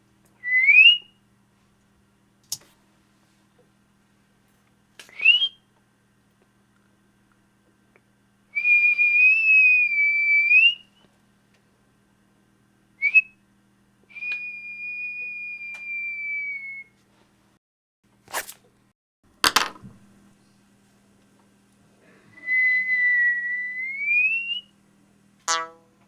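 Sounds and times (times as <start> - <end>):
high whistle: 0.4 - 1.1, 5.1 - 5.6, 8.6 - 11.0, 14.1 - 17.0, 22.4 - 24.7.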